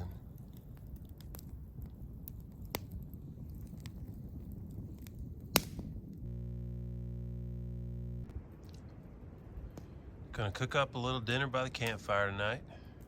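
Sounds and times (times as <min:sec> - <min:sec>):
campfire crackling and popping: 0:00.0 - 0:13.0
steady low hum: 0:06.2 - 0:08.6
low rumble: 0:06.2 - 0:10.3.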